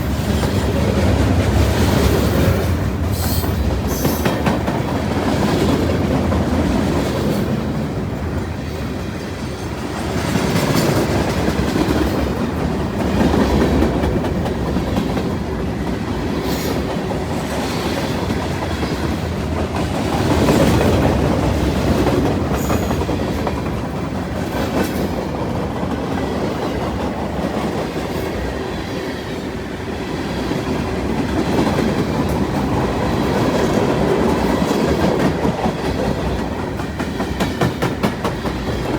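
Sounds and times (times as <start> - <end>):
train wheels rumbling on rails: 0.0 - 38.9
wheels clicking over rail joints: 31.1 - 38.9.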